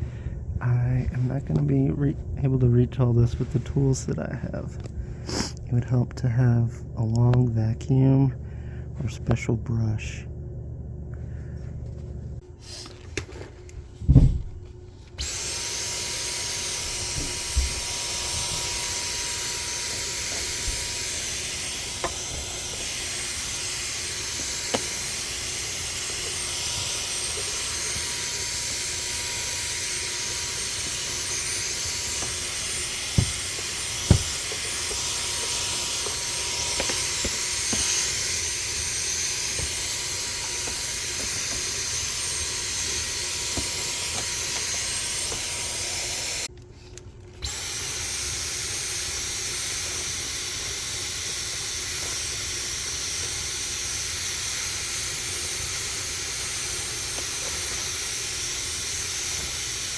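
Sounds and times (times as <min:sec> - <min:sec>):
vacuum cleaner running: 0:15.0 - 0:46.5, 0:47.4 - 0:59.9.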